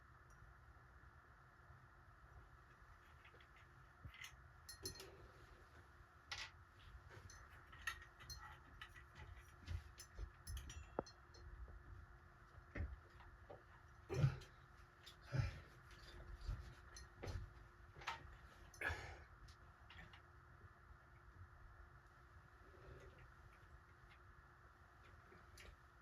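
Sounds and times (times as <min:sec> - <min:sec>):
clicks and metallic clinks of tools: 0:04.2 - 0:05.2, 0:07.2 - 0:11.4.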